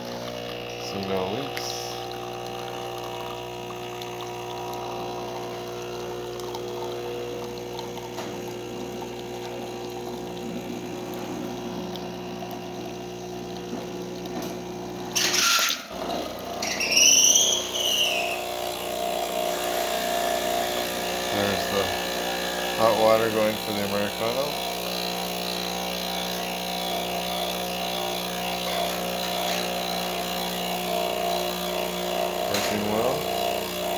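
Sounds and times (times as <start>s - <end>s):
espresso machine pump humming: 0.0s - 33.9s
high rising and falling squeals: 16.4s - 22.2s.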